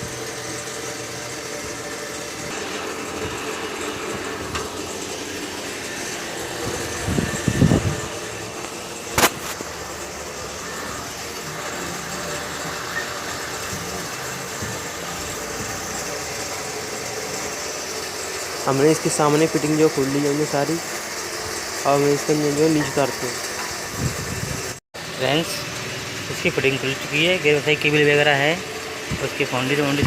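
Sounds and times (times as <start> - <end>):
mechanical background hum: 0.0 - 30.0
short clatter: 8.6 - 9.7
sharp knock: 9.2 - 9.6.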